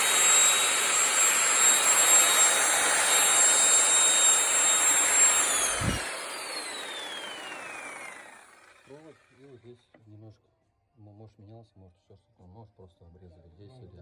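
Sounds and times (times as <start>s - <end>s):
drill motor whining: 0.0s - 9.3s.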